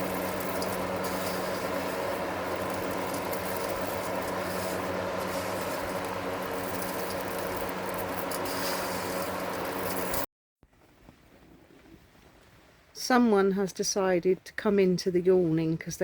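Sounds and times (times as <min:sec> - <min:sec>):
electric fan running: 0:00.0 - 0:10.3.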